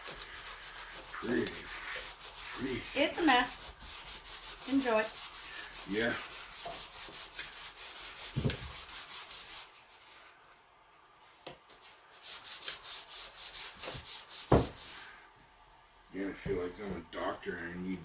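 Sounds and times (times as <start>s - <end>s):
hand sanding plastic: 0.0s - 10.2s, 11.8s - 15.1s.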